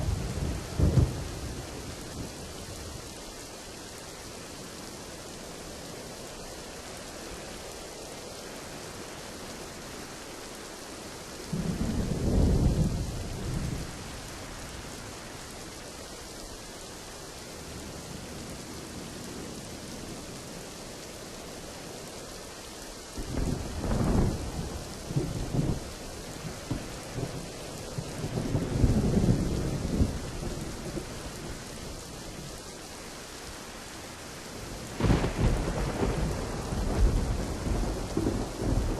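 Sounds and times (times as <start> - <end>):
thunder rumbles: 0.0 - 3.2, 11.4 - 15.6, 23.1 - 32.6, 34.5 - 38.9
rain hissing: 0.0 - 38.9.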